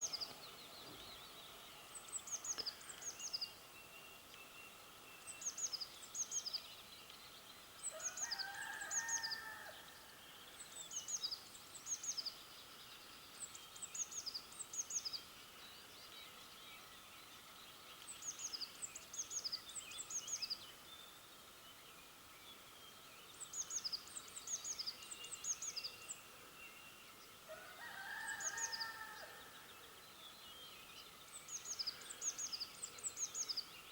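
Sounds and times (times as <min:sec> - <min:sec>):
songbirds singing: 0:00.0 - 0:33.9
rooster crowing: 0:27.5 - 0:29.4.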